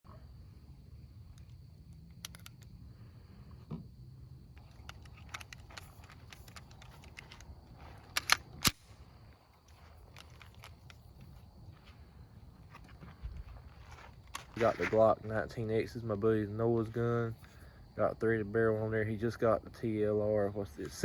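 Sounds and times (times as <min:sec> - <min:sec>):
sharp mechanical clicks: 0:08.1 - 0:08.9.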